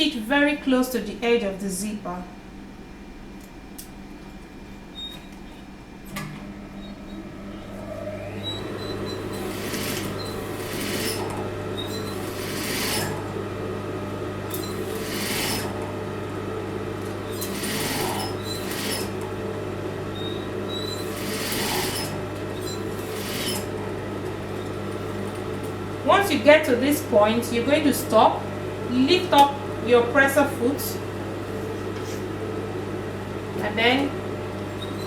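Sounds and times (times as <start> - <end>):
sewing machine running: 7.7 - 13.7, 14.4 - 29.5.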